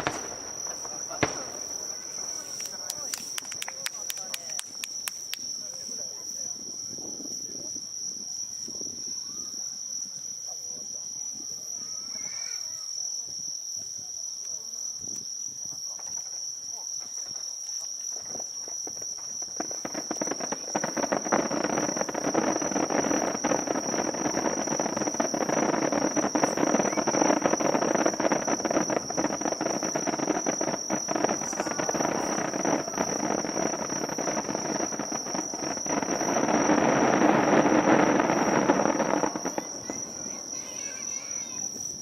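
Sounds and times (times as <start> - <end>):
crowd murmur: 0.0 - 4.5, 20.4 - 41.8
insects trilling: 0.0 - 42.0.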